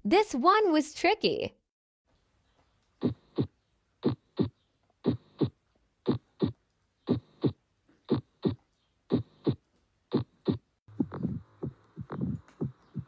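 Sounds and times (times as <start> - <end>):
heartbeat lub-dub: 3.0 - 13.0.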